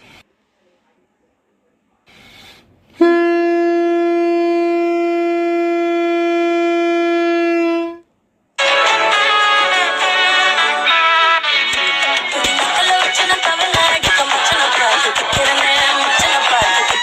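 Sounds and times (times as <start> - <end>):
ship's horn blast: 2.9 - 8.0
music: 8.6 - 17.0.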